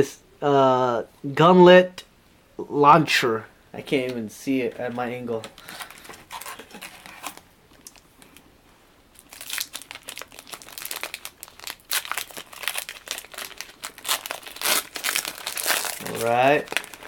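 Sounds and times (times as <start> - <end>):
foil wrapper crinkling: 5.5 - 8.4, 9.1 - 17.0.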